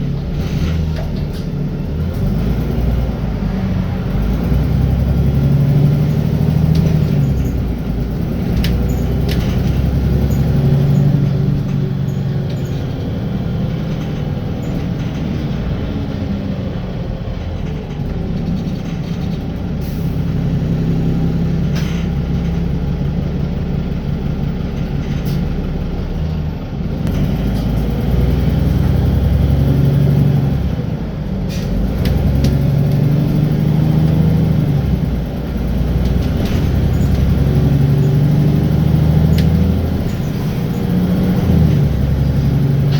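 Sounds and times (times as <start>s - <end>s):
bus engine: 0.0s - 42.9s.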